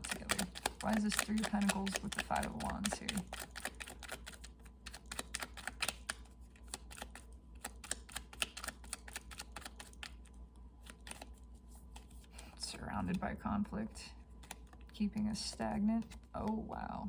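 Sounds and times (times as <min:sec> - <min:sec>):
cards clicking on a table: 0:00.0 - 0:10.2.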